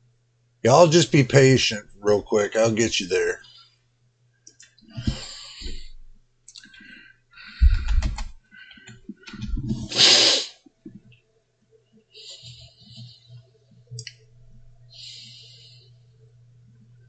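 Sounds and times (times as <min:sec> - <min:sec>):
keyboard typing: 0:07.6 - 0:09.9
loud rush of hiss: 0:09.9 - 0:10.6.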